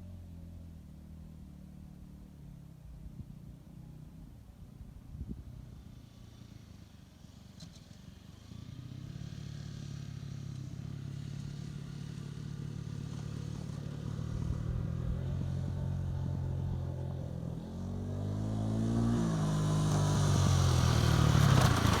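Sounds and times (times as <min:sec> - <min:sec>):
motorcycle engine running: 0:05.0 - 0:22.0.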